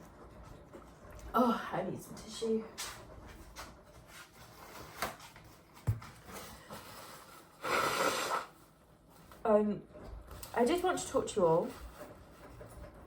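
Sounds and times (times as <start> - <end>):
person blowing nose: 7.6 - 8.6.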